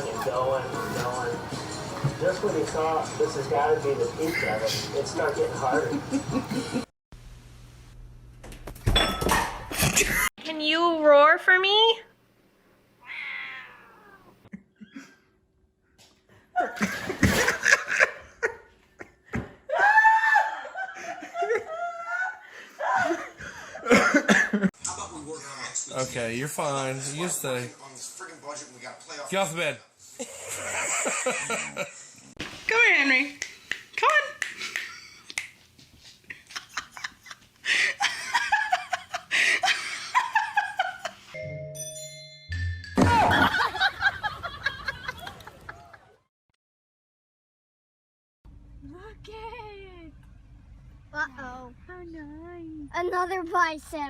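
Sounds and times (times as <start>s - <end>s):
person laughing: 5.7s - 6.9s, 36.3s - 41.1s
cat meowing: 13.0s - 14.4s.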